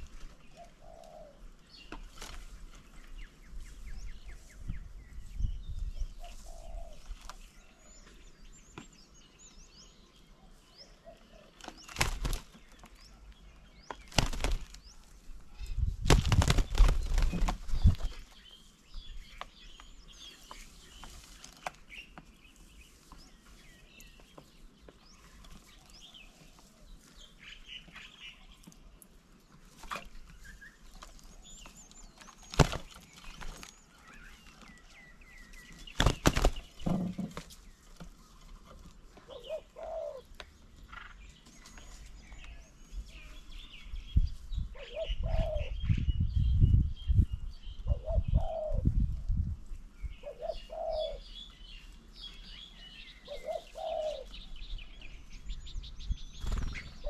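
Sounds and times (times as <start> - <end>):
dove cooing: 0.0 - 1.6, 6.0 - 8.0, 10.4 - 12.3, 39.2 - 40.4, 44.7 - 45.9, 47.8 - 49.0, 50.1 - 51.4, 53.1 - 54.5
small birds chirping: 0.0 - 57.0
wings flapping: 11.6 - 12.7, 14.0 - 14.9, 16.0 - 18.3, 32.2 - 33.7, 35.8 - 37.6, 56.4 - 57.0.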